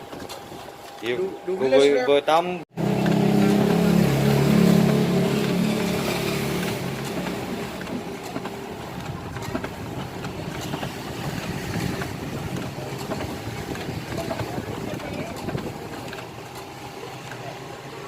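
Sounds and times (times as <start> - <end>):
mechanical clicks and rattling: 4.8 - 17.4.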